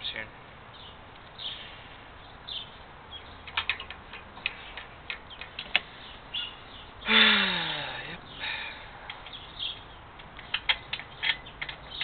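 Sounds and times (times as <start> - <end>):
clicks and taps of engine parts: 3.4 - 5.9, 9.0 - 9.4, 10.1 - 12.0.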